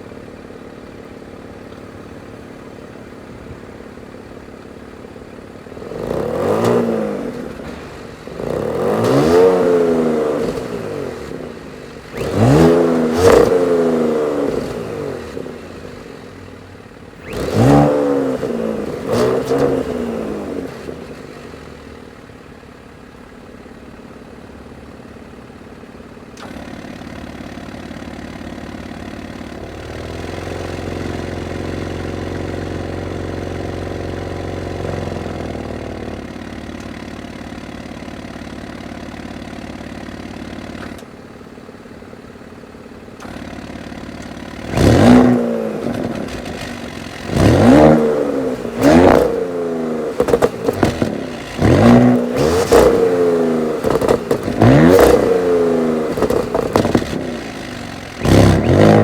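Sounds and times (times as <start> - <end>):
car engine idling: 0.0 - 59.0
engine revving: 5.6 - 16.4, 17.1 - 22.0, 29.5 - 36.4, 43.2 - 59.0.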